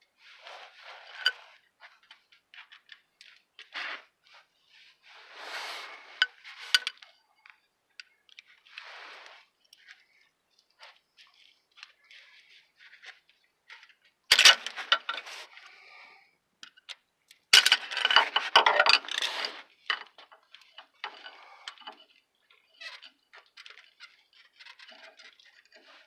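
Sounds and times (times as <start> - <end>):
metal tools clinking and rattling: 14.3 - 15.4, 17.6 - 22.1.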